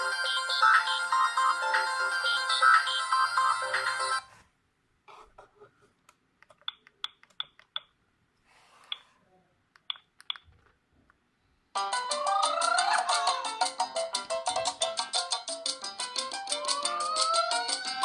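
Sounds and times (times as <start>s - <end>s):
mobile phone ringtone melody: 0.0s - 4.3s, 11.8s - 18.0s.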